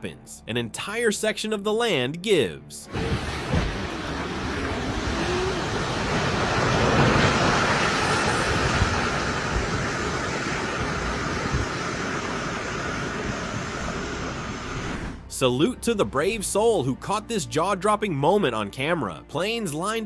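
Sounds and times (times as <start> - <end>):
landslide roar: 2.9 - 16.5.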